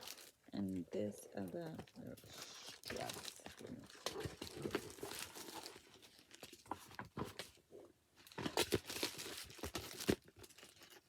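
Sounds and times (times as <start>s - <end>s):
bag rustling and crinkling: 0.0s - 0.5s, 1.4s - 7.6s.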